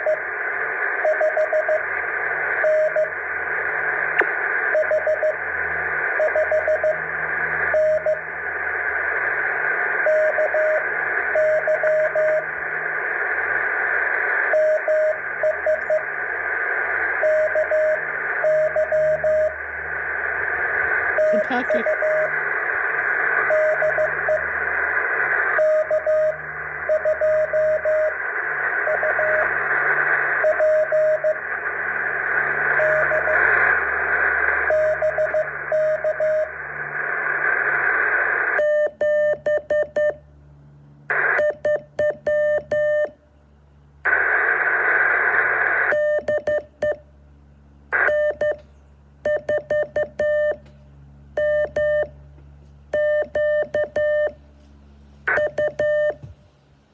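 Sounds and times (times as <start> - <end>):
radio hiss: 0.0 - 38.6, 41.0 - 41.5, 44.0 - 46.2, 47.9 - 48.7
morse code beeps: 1.0 - 1.8, 2.6 - 3.1, 4.8 - 5.4, 6.2 - 7.0, 7.8 - 8.2, 10.1 - 10.8, 11.4 - 12.4, 14.6 - 16.0, 17.2 - 19.6, 21.2 - 22.4, 23.5 - 24.5, 25.6 - 28.2, 28.9 - 29.5, 30.4 - 31.4, 32.8 - 33.4, 34.7 - 36.5, 38.6 - 40.2, 41.4 - 43.1, 45.9 - 47.0, 48.1 - 48.6, 49.2 - 50.6, 51.4 - 52.1, 52.9 - 54.4, 55.3 - 56.4
buzzy keyed signal: 21.1 - 24.7, 53.0 - 54.4, 55.3 - 56.4.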